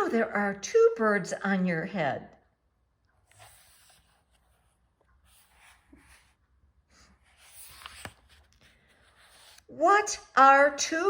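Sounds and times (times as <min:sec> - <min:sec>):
paper pages rustling: 0:03.2 - 0:06.4, 0:07.0 - 0:09.7.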